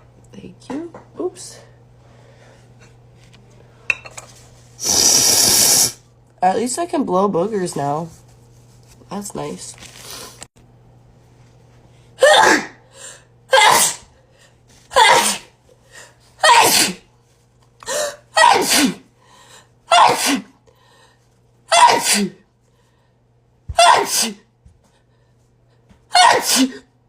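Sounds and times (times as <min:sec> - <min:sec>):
woman sneezing: 0:12.2 - 0:12.8, 0:13.5 - 0:14.1, 0:14.9 - 0:15.5, 0:16.4 - 0:17.1, 0:18.1 - 0:19.1, 0:19.9 - 0:20.6, 0:21.7 - 0:22.4, 0:23.8 - 0:24.5, 0:26.1 - 0:26.9.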